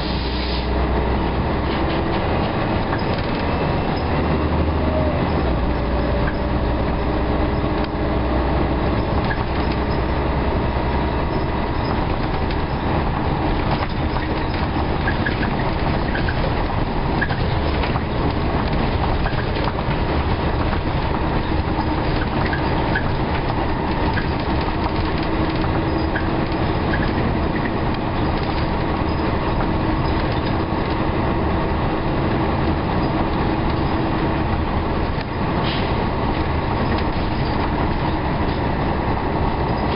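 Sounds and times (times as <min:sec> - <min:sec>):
diesel bus engine droning: 0:00.0 - 0:39.9
body rattles: 0:11.3 - 0:31.9.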